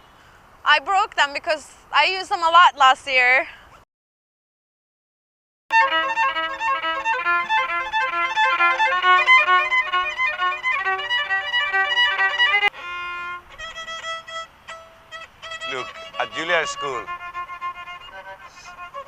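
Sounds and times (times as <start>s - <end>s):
violin music: 5.7s - 19.0s.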